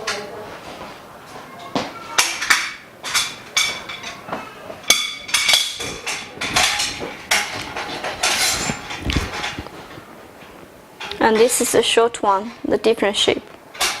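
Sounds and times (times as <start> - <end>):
metal frame bars knocking: 2.2 - 11.7.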